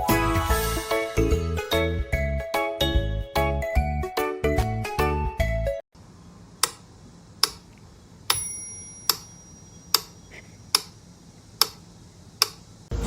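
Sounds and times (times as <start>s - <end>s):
sharp clock ticks: 7.4s - 7.6s, 8.3s - 10.9s, 11.6s - 11.8s.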